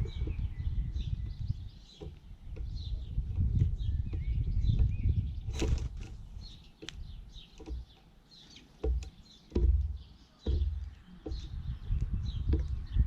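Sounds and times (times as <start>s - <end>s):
birds chirping: 0.0s - 13.0s
loud low thuds: 8.8s - 13.0s.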